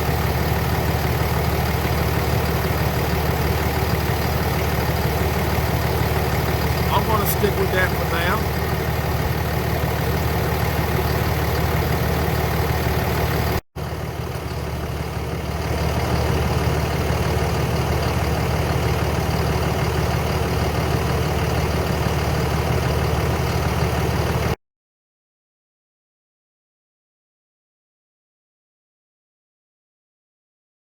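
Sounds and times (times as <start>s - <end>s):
car engine idling: 0.0s - 24.6s.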